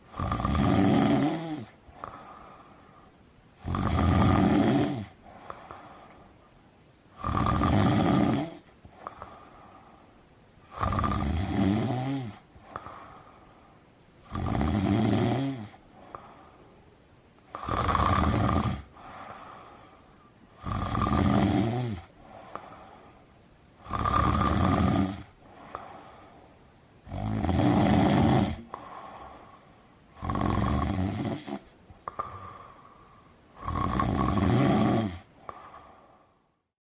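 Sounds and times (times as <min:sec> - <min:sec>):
quiet breaths: 0:00.0 - 0:36.7
loud rasping snores: 0:00.1 - 0:02.4, 0:03.6 - 0:05.2, 0:07.2 - 0:09.4, 0:10.7 - 0:13.0, 0:14.3 - 0:15.8, 0:17.5 - 0:19.2, 0:20.6 - 0:22.6, 0:23.8 - 0:25.9, 0:27.1 - 0:29.3, 0:30.2 - 0:32.8, 0:33.6 - 0:35.7.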